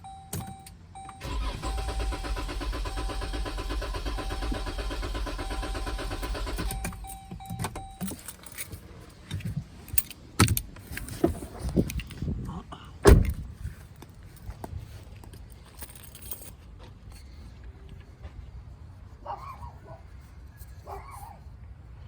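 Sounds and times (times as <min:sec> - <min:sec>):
engine cranking: 0:01.0 - 0:08.1
warning chime: 0:05.3 - 0:08.1.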